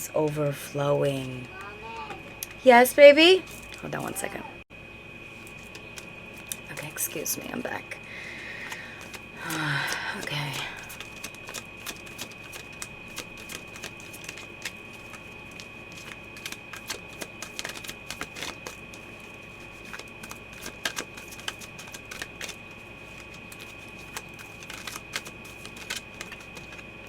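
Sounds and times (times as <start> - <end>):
cards being shuffled: 8.6 - 27.0.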